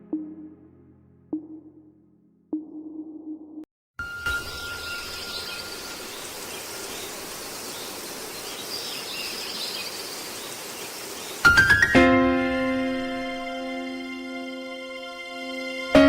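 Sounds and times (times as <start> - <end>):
music with sustained notes: 4.0 - 7.1, 11.5 - 16.0
faint bird chirps: 4.0 - 11.5
background hiss: 4.3 - 11.8.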